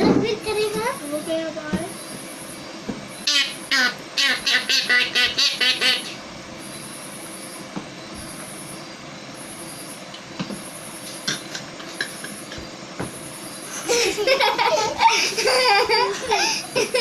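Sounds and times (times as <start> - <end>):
child's high-pitched voice: 0.0 - 1.9
low background noise: 0.0 - 17.0
child laughing: 13.7 - 17.0.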